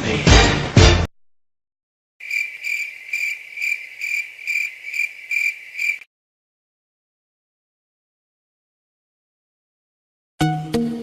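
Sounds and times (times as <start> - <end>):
crickets chirping: 2.2 - 6.1.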